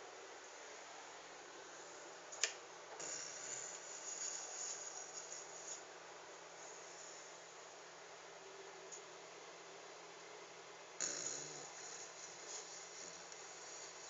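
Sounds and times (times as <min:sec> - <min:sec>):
dog snoring softly: 0:03.0 - 0:05.8, 0:11.0 - 0:14.0.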